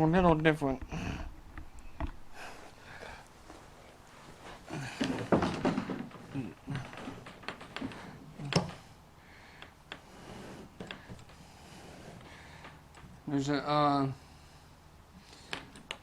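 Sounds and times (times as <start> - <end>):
plastic kayak hull knocking and scraping: 5.0 - 8.7.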